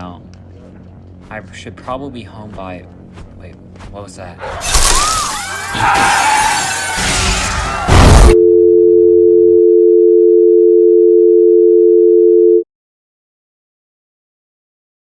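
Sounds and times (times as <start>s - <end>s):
loud crashing commotion: 4.6s - 8.4s
two-tone telephone dial tone: 8.4s - 12.6s.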